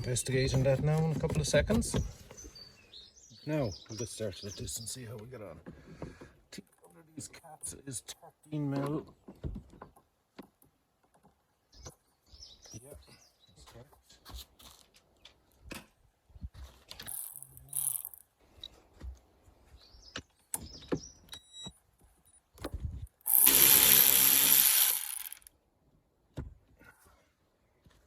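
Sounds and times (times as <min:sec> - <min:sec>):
tool handling knocks: 0:00.2 - 0:02.4
ratchet clicking: 0:17.1 - 0:18.2, 0:23.2 - 0:25.5.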